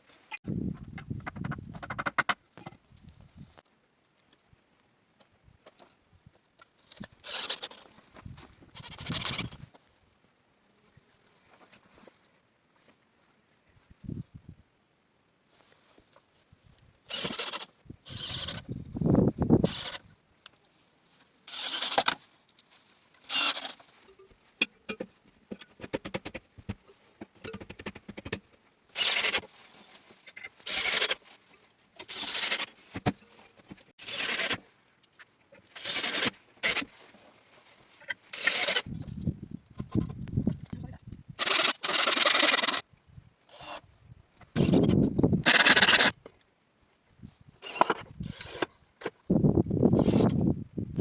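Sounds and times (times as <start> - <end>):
hand tool rasping: 30.7 - 31.2, 32.0 - 32.8, 34.0 - 34.6, 35.7 - 36.9, 38.3 - 38.9, 44.6 - 46.1.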